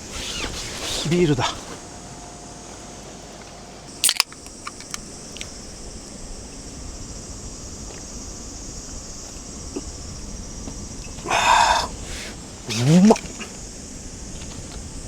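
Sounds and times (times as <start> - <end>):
insects chirring: 0.0 - 15.0
light clicks: 3.4 - 5.6
beer can cracking open: 4.0 - 5.5.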